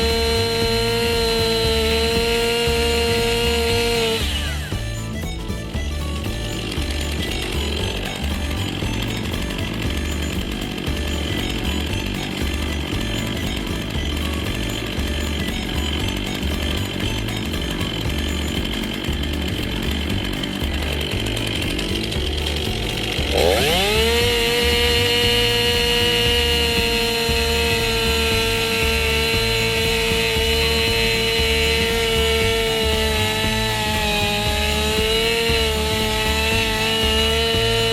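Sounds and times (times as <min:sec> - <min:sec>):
chainsaw engine revving: 0:00.0 - 0:37.9.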